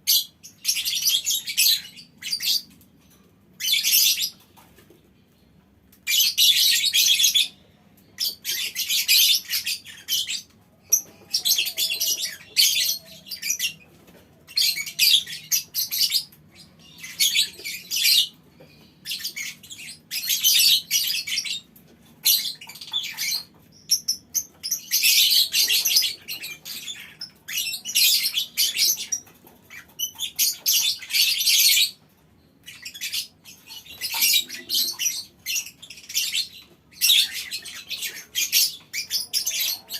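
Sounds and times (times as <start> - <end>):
lovebirds chattering shrilly: 8.2 - 13.9, 14.5 - 32.0, 32.6 - 39.9.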